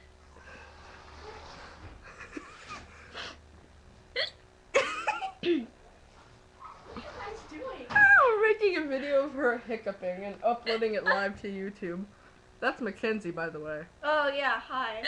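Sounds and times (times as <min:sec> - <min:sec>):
girl hiccuping: 0:04.2 - 0:05.8.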